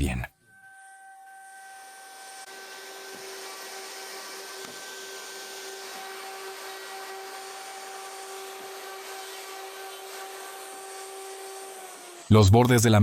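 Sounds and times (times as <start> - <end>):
wood router motor whine: 0.4 - 12.3.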